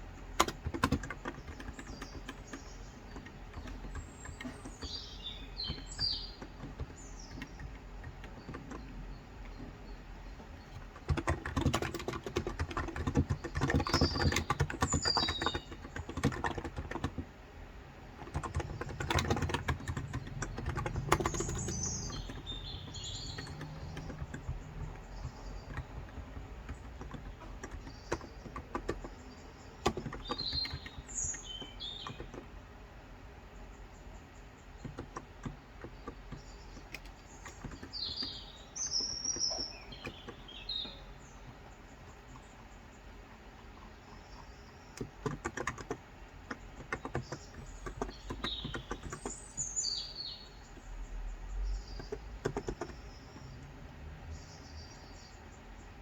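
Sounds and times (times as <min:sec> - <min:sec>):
keyboard typing: 0:00.0 - 0:17.4, 0:18.1 - 0:32.6, 0:34.7 - 0:42.5, 0:43.5 - 0:50.0, 0:51.8 - 0:53.8
birds chirping: 0:00.0 - 0:56.0.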